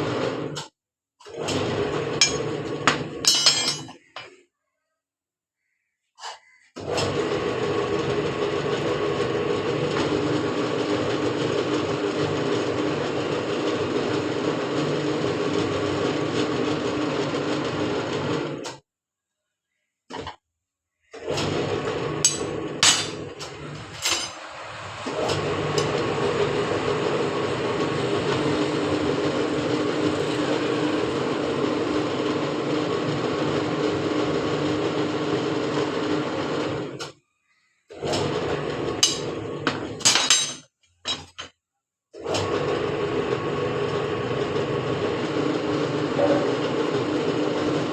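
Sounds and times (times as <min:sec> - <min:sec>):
machine motor running: 0:01.3 - 0:03.2, 0:06.8 - 0:18.6, 0:21.2 - 0:37.0, 0:42.2 - 0:47.9.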